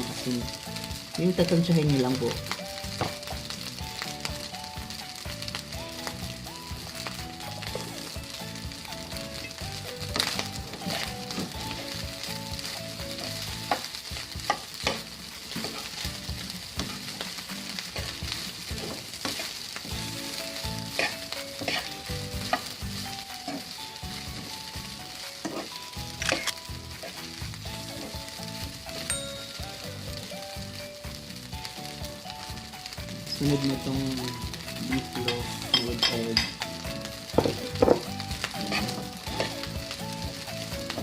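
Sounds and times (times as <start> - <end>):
quiet music: 0.0 - 41.0
rice sizzling in a pan: 0.0 - 41.0
spatula scraping and knocking pan: 10.2 - 11.6, 13.6 - 16.1, 17.9 - 19.6, 20.9 - 22.8, 25.4 - 27.2, 37.3 - 39.6.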